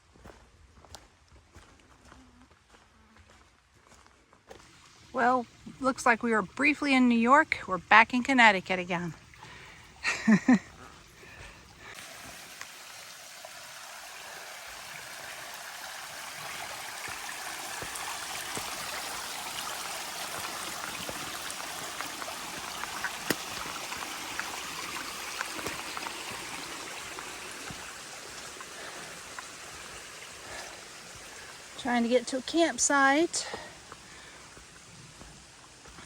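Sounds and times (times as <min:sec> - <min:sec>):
stream water rushing: 0:09.2 - 0:36.0.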